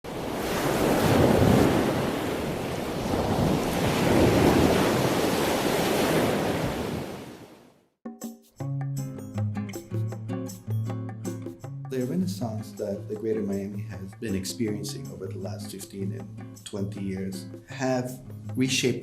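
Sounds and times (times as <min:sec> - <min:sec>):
ocean surf washing in: 0:00.0 - 0:07.8
plucked music: 0:08.0 - 0:18.9.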